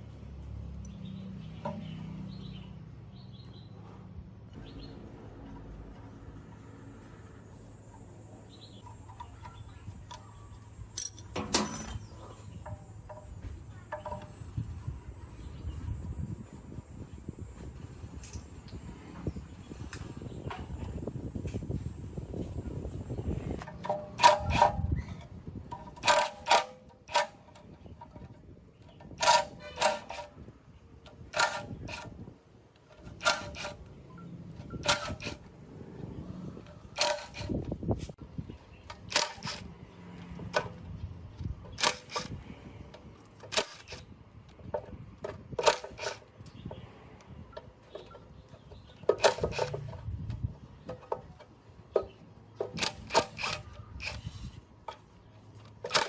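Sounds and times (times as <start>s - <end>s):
metal clinks and knocks: 7.9s - 14.4s.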